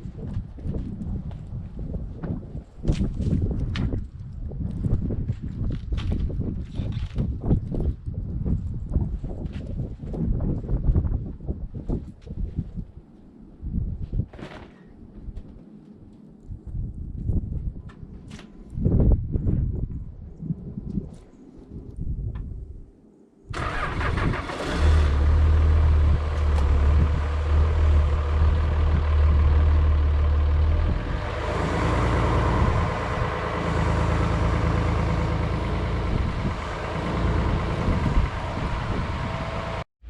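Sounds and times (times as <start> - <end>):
engine running with low hum: 23.6 - 39.9.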